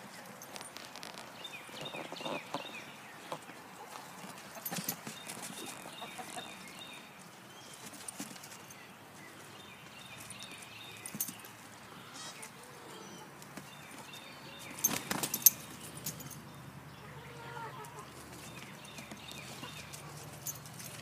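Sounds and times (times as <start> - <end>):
animals scuffling on ground: 0.0 - 16.4, 17.2 - 21.0
poultry chirping: 5.0 - 7.0.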